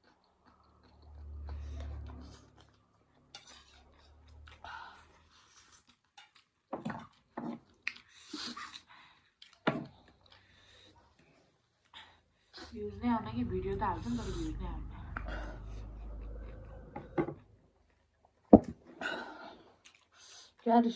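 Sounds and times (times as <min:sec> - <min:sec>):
chewing noodles: 0:00.0 - 0:11.2, 0:14.0 - 0:18.1
muffled low rumble: 0:12.8 - 0:17.7.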